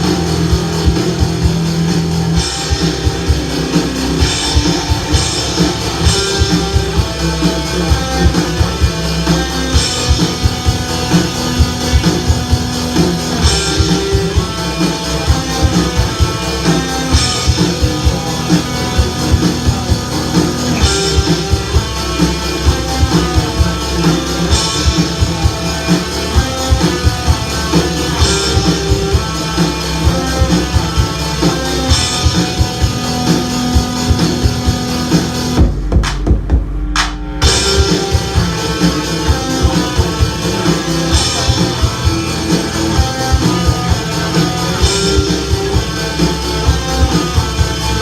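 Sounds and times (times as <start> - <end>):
rock music: 0.0 - 48.0.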